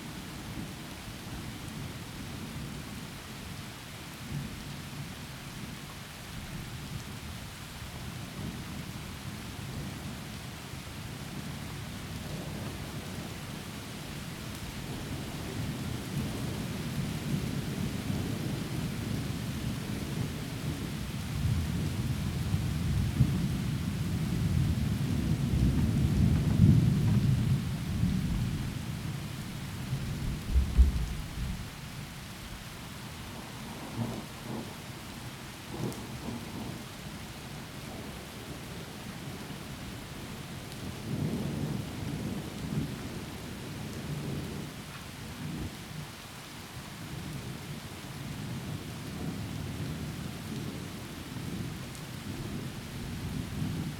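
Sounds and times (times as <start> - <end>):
rolling thunder: 29.9 - 31.8
sharp thunderclap: 30.2 - 31.7.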